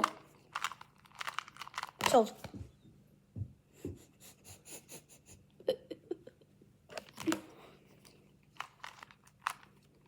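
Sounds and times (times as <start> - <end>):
plastic cube clicking: 0.0 - 2.2.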